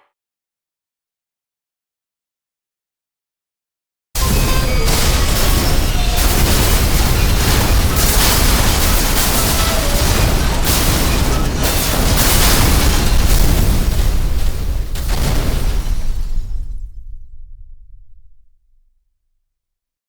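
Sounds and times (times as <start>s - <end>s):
metallic screeches: 4.2s - 12.1s
debris noise: 4.2s - 18.0s
rumbling crash: 4.2s - 18.9s.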